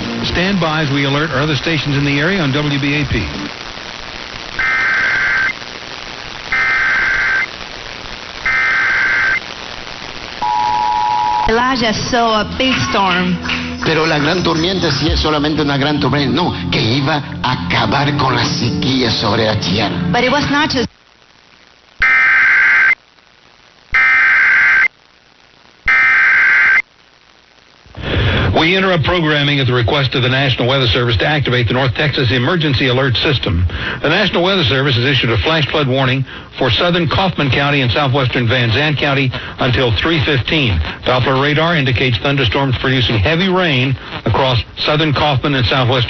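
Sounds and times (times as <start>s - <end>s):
radio hiss: 0.0s - 46.0s
buzzy digital data tones: 0.4s - 13.1s, 22.0s - 27.0s.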